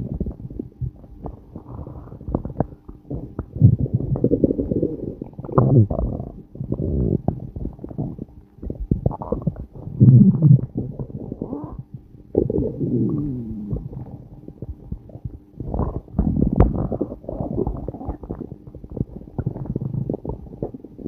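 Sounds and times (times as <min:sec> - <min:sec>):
stomach growling: 0:00.0 - 0:21.0.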